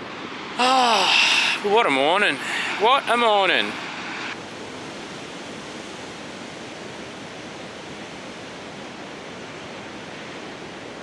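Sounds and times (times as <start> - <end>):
distant ocean surf: 0.0 - 11.0.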